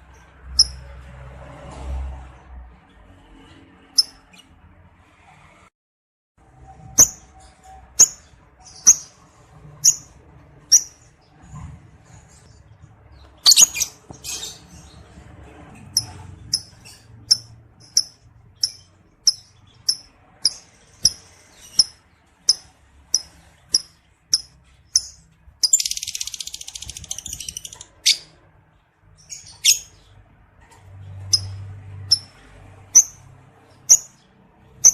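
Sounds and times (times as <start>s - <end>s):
bird chirping: 0.1s - 0.8s, 3.9s - 4.6s, 6.8s - 11.5s, 12.5s - 15.2s, 15.8s - 30.2s, 31.1s - 34.9s
rapid rattling bird chatter: 7.9s - 34.9s.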